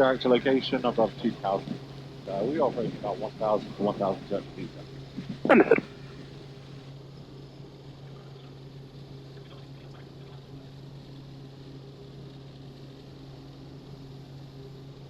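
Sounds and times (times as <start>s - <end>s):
helicopter engine and rotors drone: 0.0s - 15.0s.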